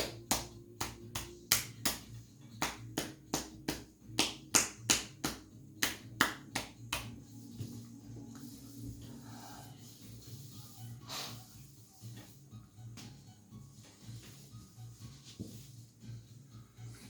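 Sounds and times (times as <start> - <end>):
hands tapping on chest: 0.0 - 7.7.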